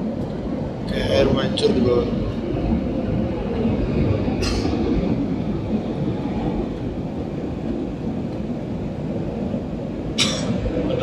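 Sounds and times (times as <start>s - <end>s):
jet cabin engine rumble: 0.0s - 11.0s.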